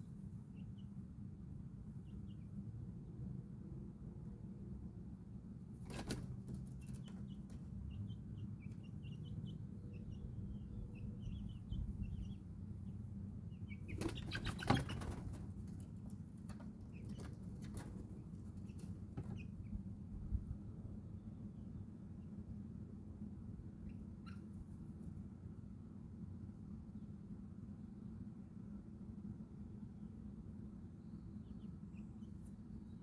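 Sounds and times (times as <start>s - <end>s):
baby chicks peeping: 0.0s - 2.8s, 5.8s - 20.6s, 23.5s - 25.2s, 30.8s - 33.0s
low background hum: 0.0s - 33.0s
rustling and scratching: 14.0s - 19.5s.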